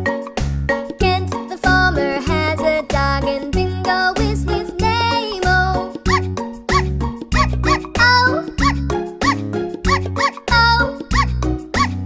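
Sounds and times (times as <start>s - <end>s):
bouncy music with bass beat: 0.0s - 12.0s
squeaky rising-falling call: 6.1s - 8.0s.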